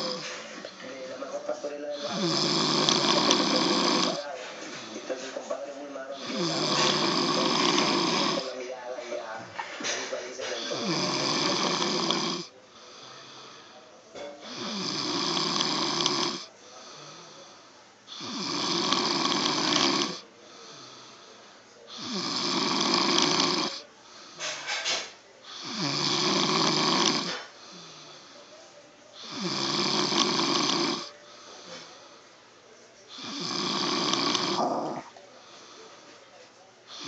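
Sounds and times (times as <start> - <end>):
man snoring: 0.0 - 0.4, 1.9 - 5.0, 6.2 - 8.6, 10.6 - 13.8, 14.4 - 17.5, 18.1 - 21.3, 21.9 - 23.8, 25.5 - 28.4, 29.2 - 31.2, 33.1 - 35.9
quiet breathing: 0.0 - 37.0.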